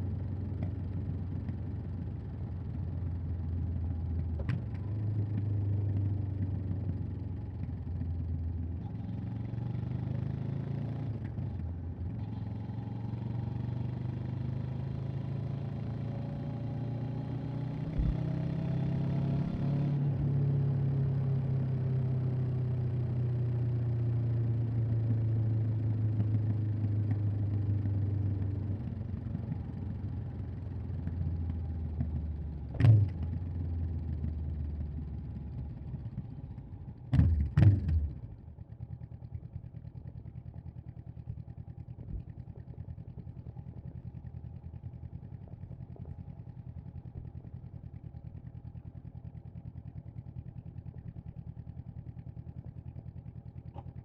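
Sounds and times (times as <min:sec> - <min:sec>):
motorcycle engine running: 0:14.2 - 0:54.0
road noise: 0:17.9 - 0:18.4.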